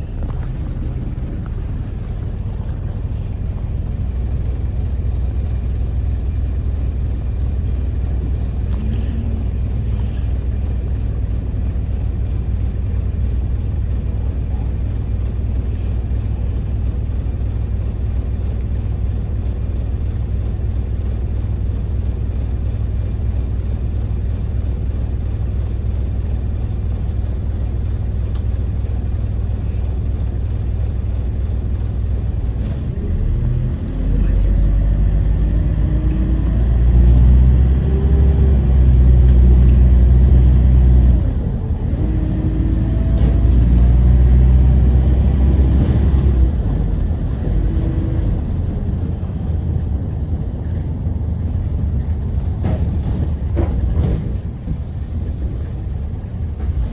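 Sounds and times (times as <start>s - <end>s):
bus engine and road rumble: 0.0s - 56.9s.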